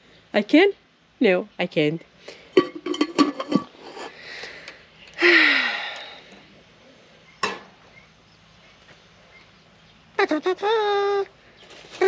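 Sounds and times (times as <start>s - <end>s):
person breathy exhale: 3.8s - 6.4s.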